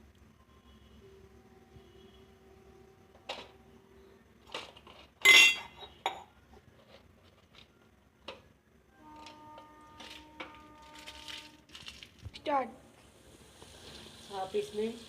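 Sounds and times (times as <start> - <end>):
metal utensils clinking on pot: 4.5 - 6.3.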